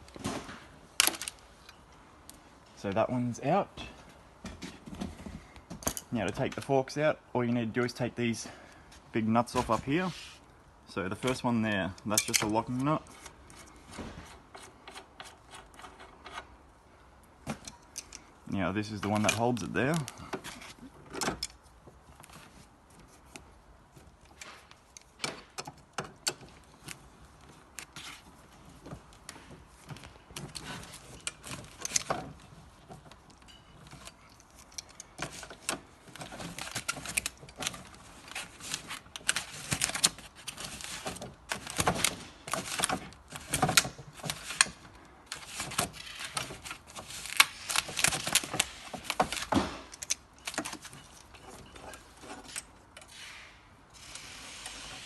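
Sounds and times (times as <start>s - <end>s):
metal tools clinking and rattling: 33.3s - 37.8s.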